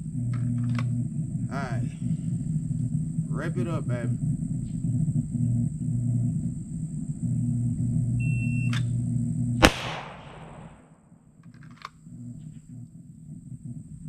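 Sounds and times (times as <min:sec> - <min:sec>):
pistol shot: 0:09.6 - 0:11.0.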